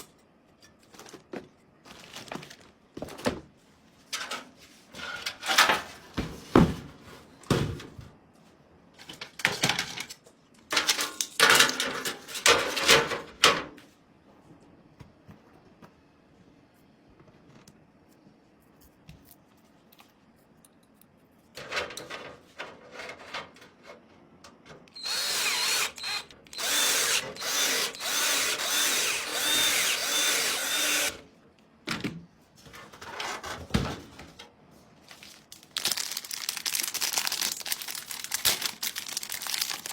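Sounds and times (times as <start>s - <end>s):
electric screwdriver whining: 25.0s - 31.2s.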